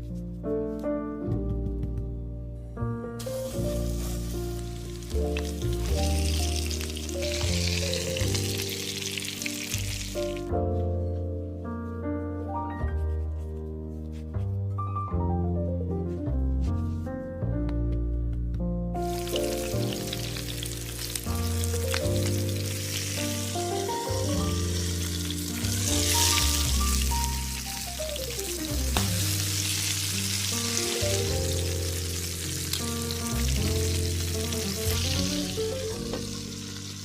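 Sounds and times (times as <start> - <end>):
background music with melody: 0.0 - 37.0
food sizzling in hot oil: 3.2 - 10.5, 19.1 - 37.0.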